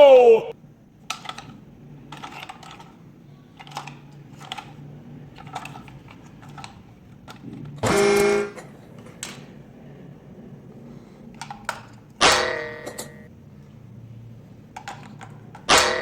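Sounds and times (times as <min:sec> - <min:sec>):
plastic toys clicking and rattling: 0:01.0 - 0:09.5, 0:11.3 - 0:13.2, 0:14.7 - 0:16.0
horn-like honk: 0:07.8 - 0:08.6.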